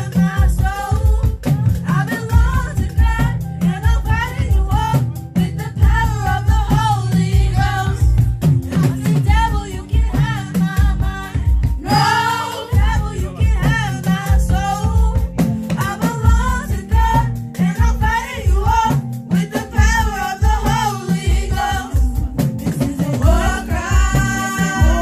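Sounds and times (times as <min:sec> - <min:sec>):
person singing over a beat: 0:08.7 - 0:25.0.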